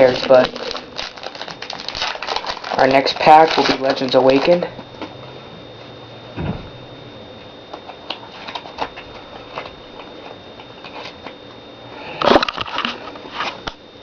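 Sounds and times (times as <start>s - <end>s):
foil wrapper crinkling: 0.0s - 5.0s
trading cards being handled: 0.0s - 5.2s.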